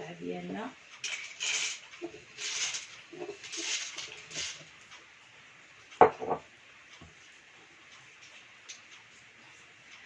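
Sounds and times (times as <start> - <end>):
seeds poured into container: 1.1 - 4.6.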